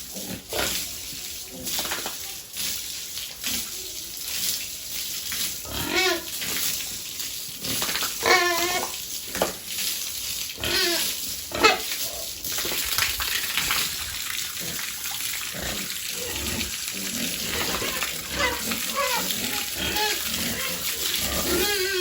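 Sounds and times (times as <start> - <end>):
piglets squealing: 8.2 - 8.9, 17.4 - 22.0.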